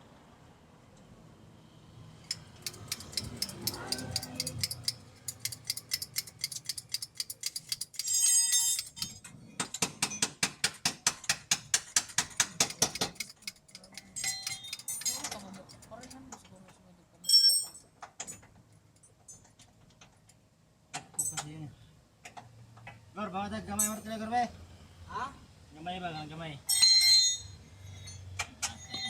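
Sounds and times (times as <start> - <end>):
ratchet wrench clicking: 2.2 - 9.2, 12.0 - 16.2
ringing metal clatter: 2.3 - 10.4, 12.4 - 16.2.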